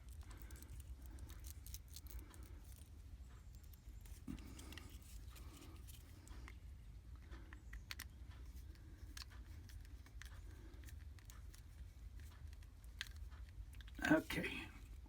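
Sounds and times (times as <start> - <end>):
low steady hum: 0.0 - 15.0
small clicks of wires and tool: 7.2 - 14.0.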